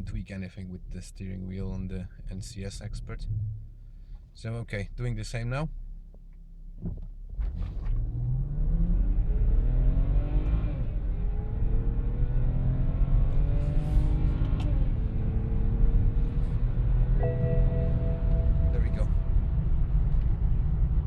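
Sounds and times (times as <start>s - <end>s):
car engine accelerating hard: 7.4s - 21.0s.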